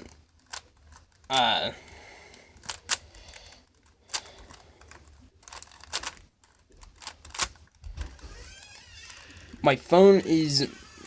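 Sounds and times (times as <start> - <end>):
plastic puzzle cube clicking: 0.0 - 1.5, 2.5 - 9.5.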